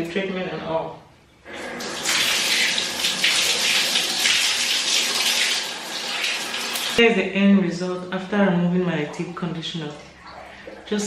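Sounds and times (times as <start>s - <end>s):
water running from a tap: 1.5s - 7.0s.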